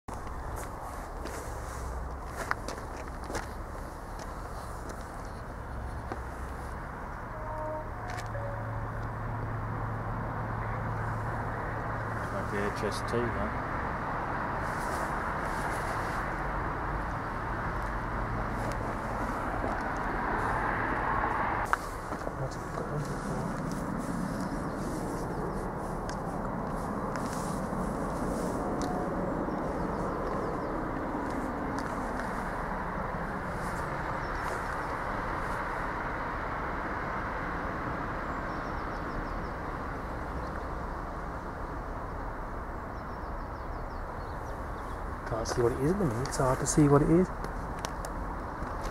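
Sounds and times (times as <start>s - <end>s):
train passing: 3.7s - 41.9s.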